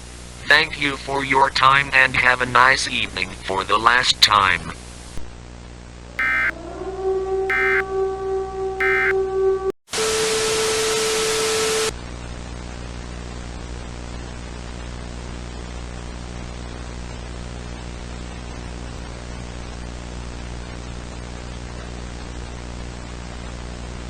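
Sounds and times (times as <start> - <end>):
electronic alert tone: 6.2 - 6.6, 7.5 - 7.8, 8.8 - 9.2
loud broadcast static with tone: 6.2 - 6.6, 7.5 - 7.8, 8.8 - 9.2
static hiss: 8.8 - 9.1.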